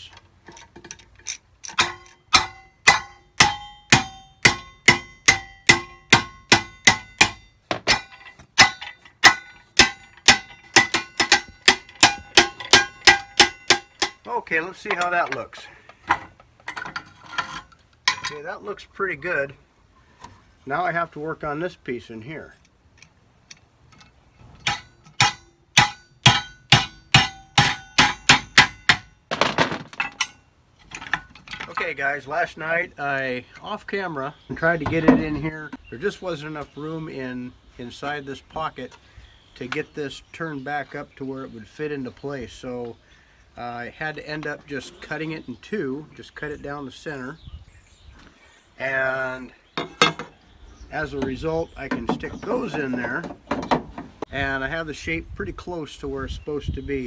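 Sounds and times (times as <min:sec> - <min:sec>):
hammer striking metal: 0:01.7 - 0:14.3, 0:24.6 - 0:29.2.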